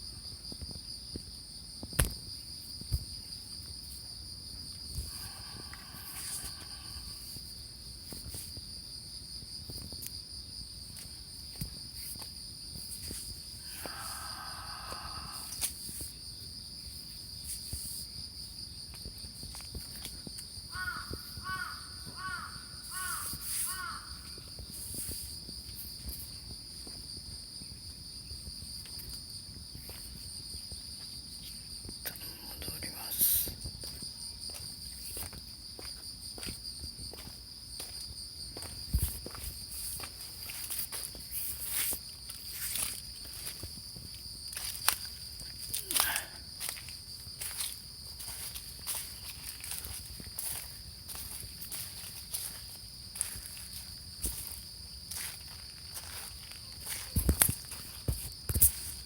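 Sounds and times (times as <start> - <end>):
insects trilling: 0.0 - 59.0
crow cawing: 5.1 - 7.2, 13.7 - 15.6, 20.7 - 24.3.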